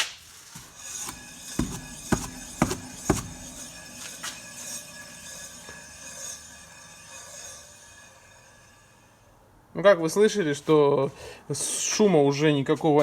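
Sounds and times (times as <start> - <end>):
brake pads rubbing: 0.0 - 6.3
wheel knocks: 0.6 - 4.7.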